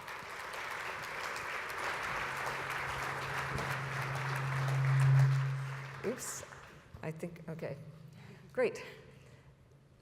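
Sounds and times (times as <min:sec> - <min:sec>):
audience applauding: 0:00.0 - 0:06.8
steady low hum: 0:03.4 - 0:06.6.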